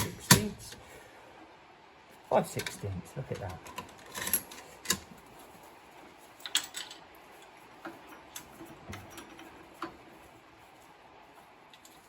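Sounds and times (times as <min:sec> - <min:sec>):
tools and metal parts clicking: 0:00.0 - 0:00.7, 0:02.5 - 0:02.8, 0:03.4 - 0:05.3, 0:06.4 - 0:07.1.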